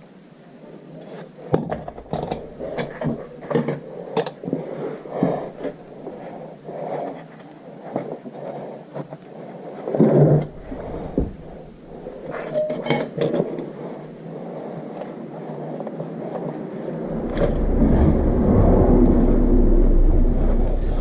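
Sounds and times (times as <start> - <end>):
low rumble: 2.0 - 3.3, 10.4 - 12.4, 16.8 - 21.0.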